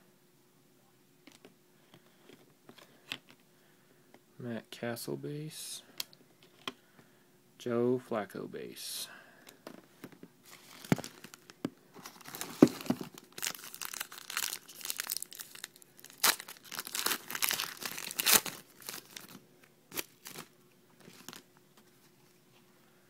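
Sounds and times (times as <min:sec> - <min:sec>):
plastic wrapper crinkling and tearing: 0:10.5 - 0:21.5.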